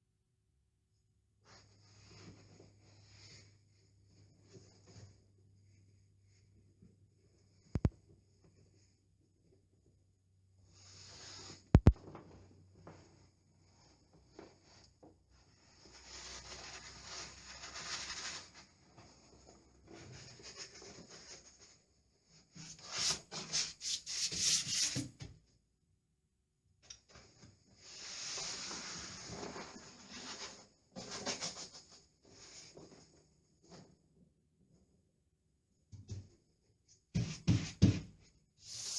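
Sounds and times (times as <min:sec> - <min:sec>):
paper rustling against wall: 0:15.7 - 0:21.8.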